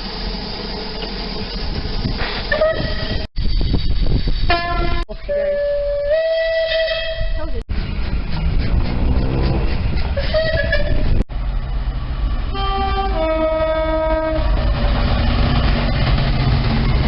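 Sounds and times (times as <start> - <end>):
train rumbling: 0.0 - 17.0
train horn: 4.5 - 7.5, 10.2 - 11.2, 12.5 - 14.7.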